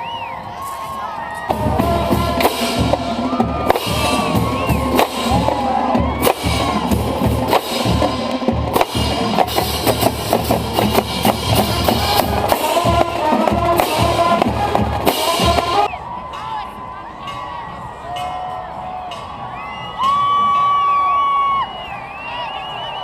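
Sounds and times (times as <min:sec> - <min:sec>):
parade band music: 0:00.6 - 0:21.1
bass drum and snare beating: 0:01.5 - 0:16.0.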